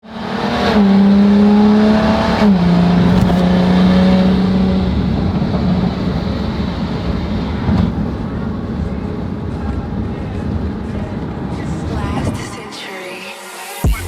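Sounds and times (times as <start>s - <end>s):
car engine revving through exhaust: 0.0s - 8.2s.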